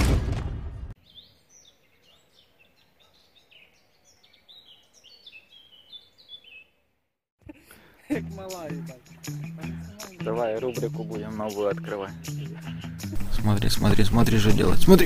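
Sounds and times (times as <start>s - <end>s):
songbird singing: 1.0s - 7.0s, 7.8s - 14.4s
music: 7.4s - 15.0s.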